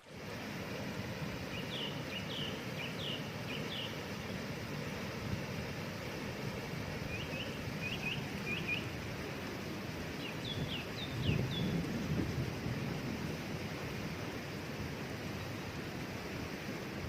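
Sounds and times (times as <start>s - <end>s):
waterfall rushing: 0.0s - 17.0s
small bird chirping: 1.6s - 4.0s, 7.1s - 8.9s, 10.2s - 11.8s.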